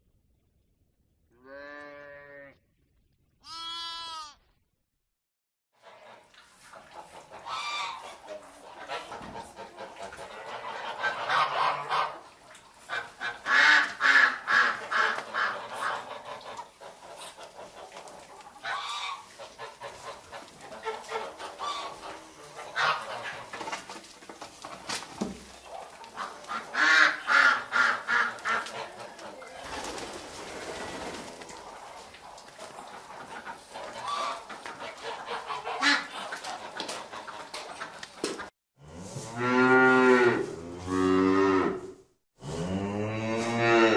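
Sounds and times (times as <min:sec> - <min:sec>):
geese honking: 0:07.2 - 0:23.6, 0:32.8 - 0:38.0.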